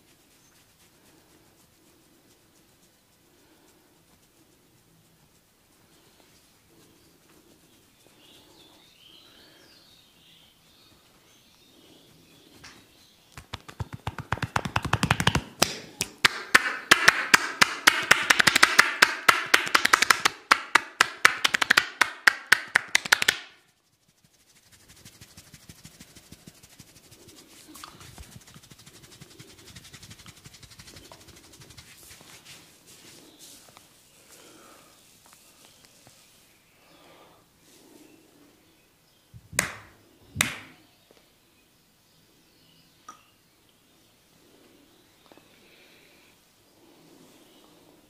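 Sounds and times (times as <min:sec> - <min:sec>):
soft rustle of hands: 0:00.0 - 0:16.1, 0:23.0 - 0:40.2
hands slapping on head: 0:12.6 - 0:23.7, 0:24.5 - 0:32.4, 0:39.5 - 0:40.8.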